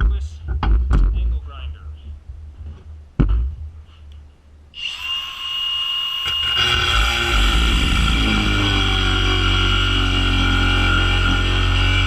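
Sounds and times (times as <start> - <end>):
angle grinder whine: 4.7 - 12.0
grinder disc cutting steel: 4.8 - 12.0.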